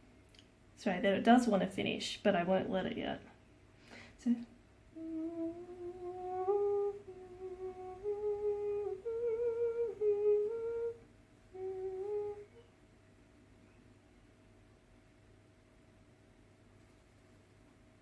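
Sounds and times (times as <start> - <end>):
woman humming a melody: 4.3 - 12.7.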